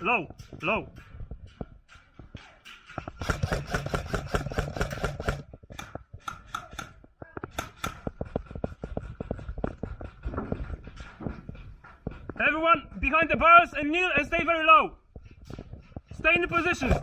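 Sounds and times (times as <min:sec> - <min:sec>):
airsoft gun bursts: 0:03.0 - 0:07.0, 0:16.6 - 0:17.0.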